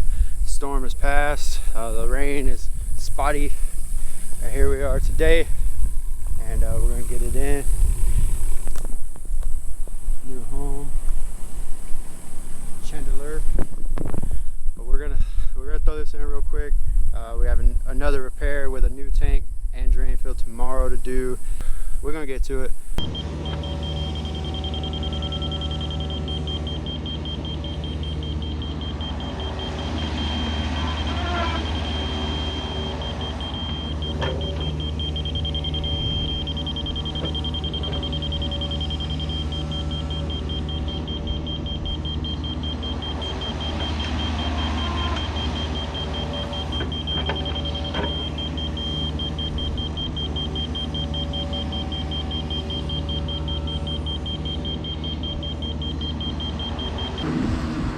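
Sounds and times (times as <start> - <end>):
diesel engine running: 0.0 - 18.7, 20.0 - 57.9
rapid warning beeps: 22.7 - 57.3.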